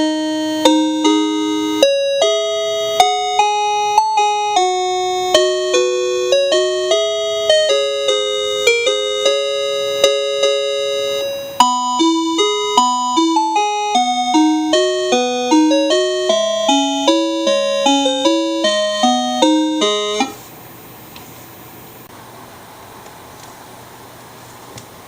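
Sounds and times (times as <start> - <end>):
electronic chime melody: 0.0 - 20.4.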